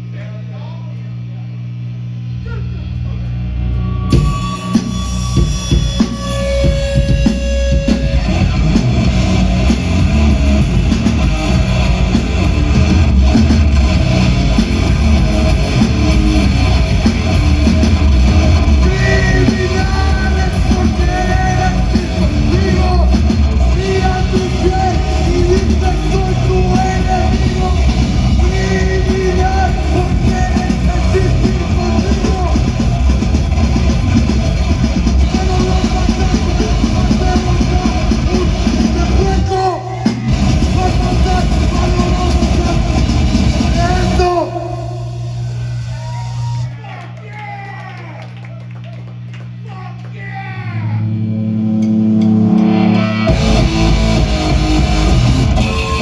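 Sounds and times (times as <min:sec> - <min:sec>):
loud rock band: 0:02.8 - 0:46.7, 0:50.5 - 0:56.0
person singing or yelling: 0:18.8 - 0:32.8, 0:35.2 - 0:45.2, 0:49.7 - 0:51.2.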